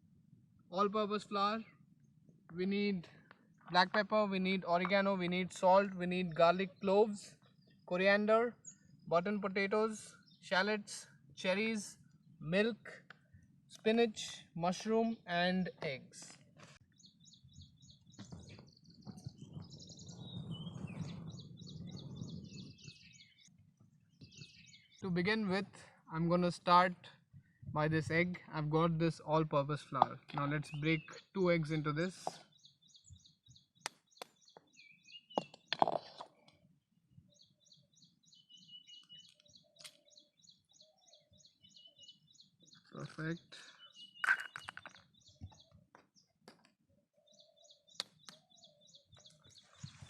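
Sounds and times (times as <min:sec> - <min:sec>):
small birds chirping: 0:00.0 - 0:50.0
eggs cracked against bowl: 0:44.2 - 0:45.0.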